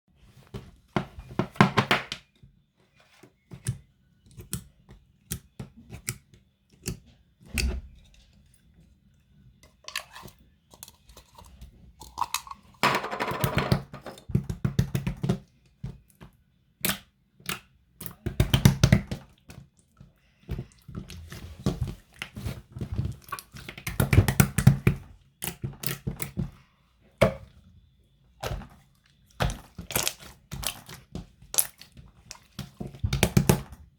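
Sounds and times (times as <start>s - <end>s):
slime squishing and popping: 28.4s - 33.8s.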